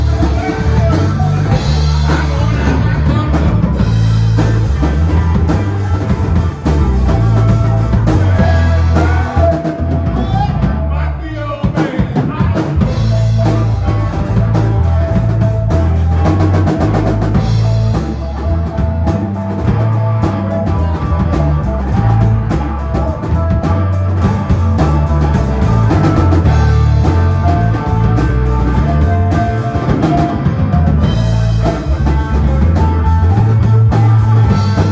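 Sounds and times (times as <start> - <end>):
person singing: 0.0 - 6.5, 7.1 - 34.9
rock band music: 0.0 - 34.9.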